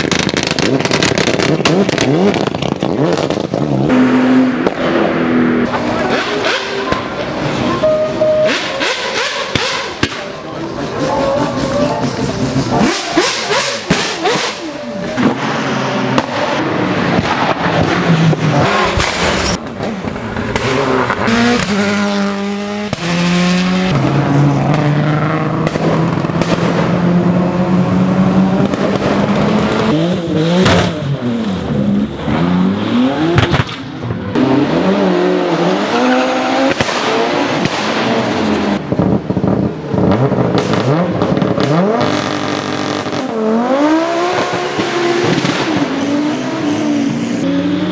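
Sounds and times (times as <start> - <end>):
exhaust pops and crackles: 0.0 - 4.0, 23.9 - 27.0, 28.5 - 32.4, 33.3 - 34.5, 36.6 - 43.3
racing car engines revving: 0.0 - 47.9
racing cars passing by: 0.1 - 47.9.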